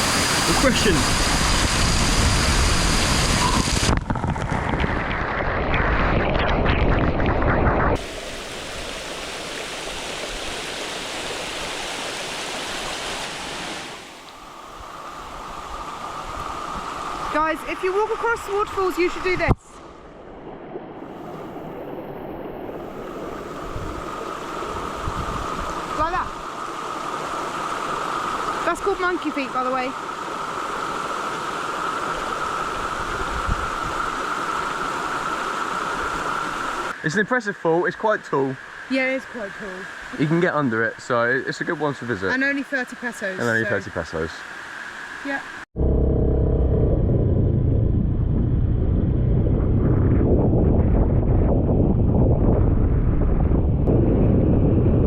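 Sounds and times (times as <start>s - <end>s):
waterfall rushing: 0.0s - 4.2s, 8.0s - 19.4s
low bump: 45.8s - 55.0s.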